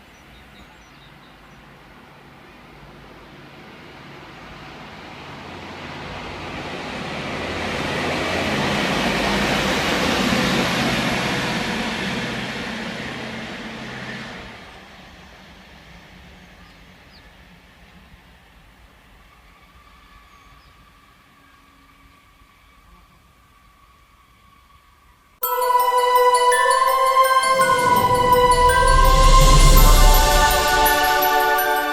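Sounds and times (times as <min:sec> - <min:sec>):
rail vehicle diesel engine passing: 0:02.7 - 0:16.5, 0:25.4 - 0:31.9.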